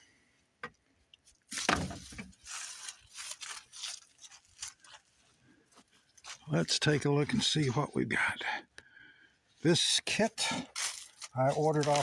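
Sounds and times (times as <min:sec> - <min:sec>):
packaging rustling and tearing: 0:01.6 - 0:05.1, 0:10.8 - 0:12.0.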